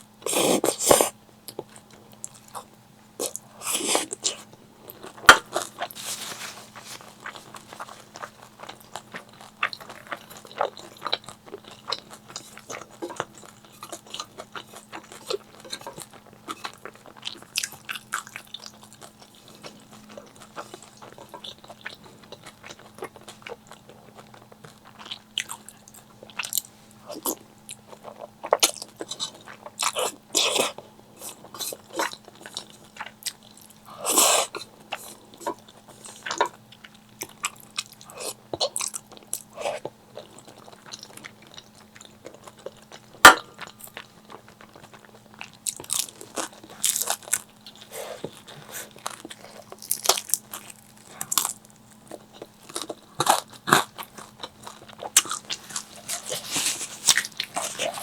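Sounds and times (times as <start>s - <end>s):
crunchy chewing of fried food: 0.0s - 58.0s.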